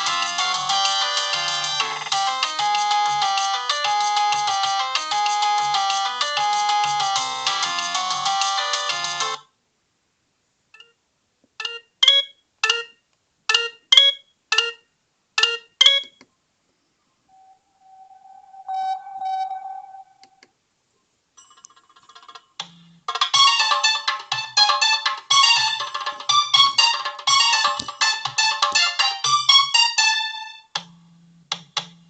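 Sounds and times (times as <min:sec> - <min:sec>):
polyphonic ringtone melody: 0:00.0 - 0:09.4, 0:11.6 - 0:14.8
short electronic beeps: 0:11.6 - 0:12.9, 0:13.5 - 0:14.8, 0:15.4 - 0:16.2, 0:17.3 - 0:20.4
steady electronic tone: 0:17.3 - 0:20.4.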